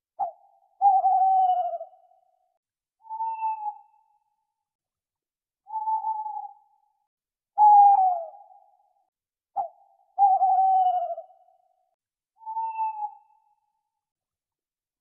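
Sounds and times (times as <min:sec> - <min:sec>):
owl hooting: 0:00.2 - 0:02.1, 0:03.0 - 0:04.0, 0:05.7 - 0:06.7, 0:07.6 - 0:08.6, 0:09.6 - 0:11.5, 0:12.4 - 0:13.6.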